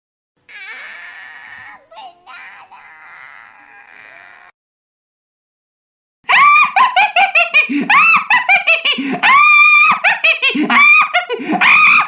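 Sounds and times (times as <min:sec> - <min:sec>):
high-pitched squealing laughter: 0:00.5 - 0:04.5.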